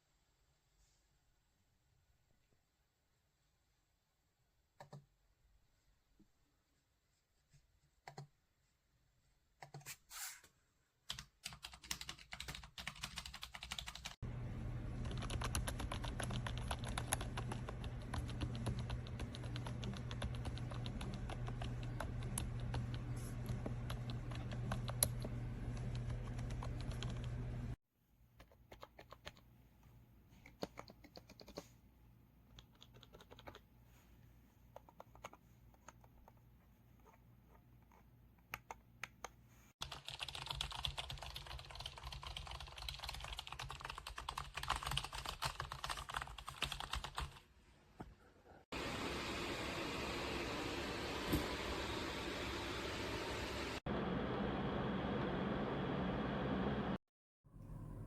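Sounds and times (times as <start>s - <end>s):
keyboard keys clicking: 11.1s - 14.2s, 15.0s - 27.4s, 32.6s - 33.6s, 39.9s - 47.4s.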